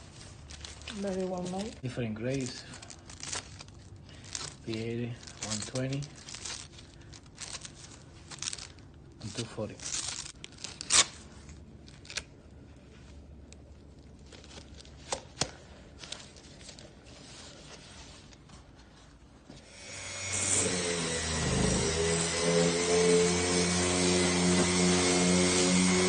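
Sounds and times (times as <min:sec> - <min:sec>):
orbital sander motor humming: 0:19.7 - 0:26.0.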